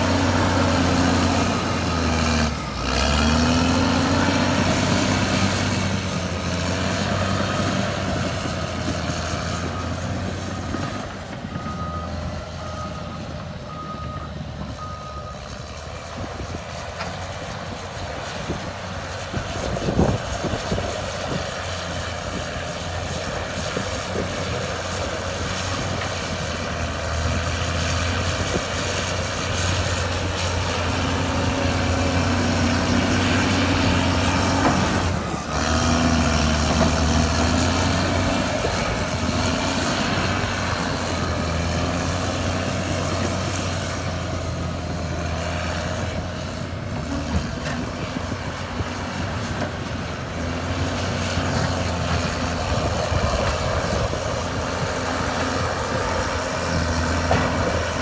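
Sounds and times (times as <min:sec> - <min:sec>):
bulldozer diesel engine under load: 0:00.0 - 0:58.0
track and blade clatter: 0:15.5 - 0:58.0.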